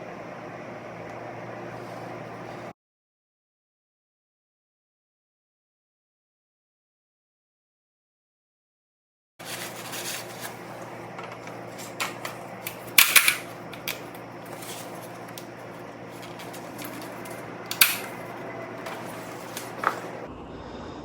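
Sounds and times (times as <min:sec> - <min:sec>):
steady low hum: 0:00.0 - 0:02.7, 0:09.4 - 0:21.0
tools clicking and clacking: 0:09.4 - 0:20.3.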